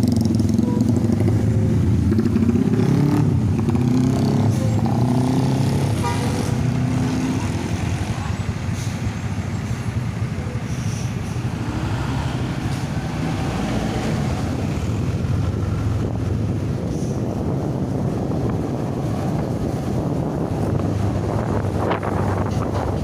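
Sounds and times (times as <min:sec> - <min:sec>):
road noise: 0:00.0 - 0:23.0
vehicle engine: 0:00.0 - 0:23.0
wind buffeting microphone: 0:00.1 - 0:23.0.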